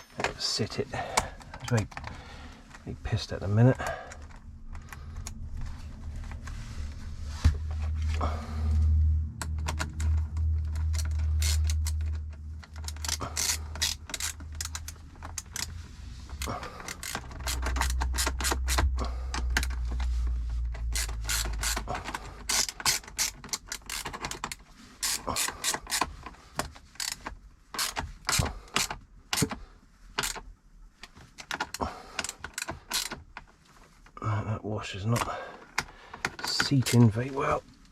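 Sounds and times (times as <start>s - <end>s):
low rumble: 4.2s - 13.2s
ratchet spanner clicking: 9.4s - 15.8s, 16.4s - 19.8s, 20.7s - 26.2s, 27.0s - 29.6s, 30.2s - 30.4s, 32.2s - 33.2s.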